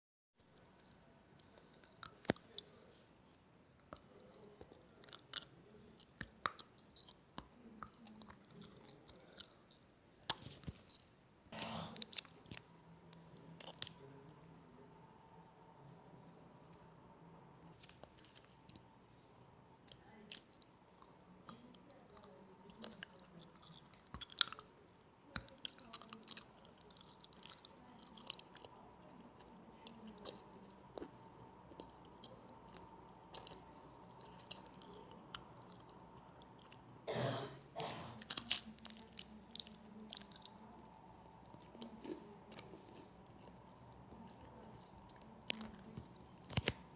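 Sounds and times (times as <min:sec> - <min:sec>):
faint clicks and crackles: 0:00.4 - 0:37.0, 0:38.1 - 0:46.9
faint crackles and clicks: 0:38.2 - 0:46.9.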